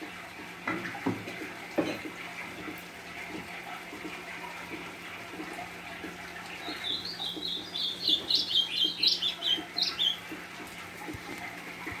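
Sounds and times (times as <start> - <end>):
bird singing high chirps: 6.6 - 10.2.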